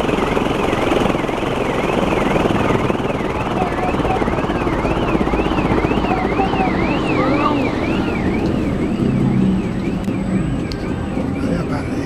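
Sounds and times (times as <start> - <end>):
wind rush and low rumble: 0.0 - 6.7
siren-like tone rising and falling: 0.0 - 12.0.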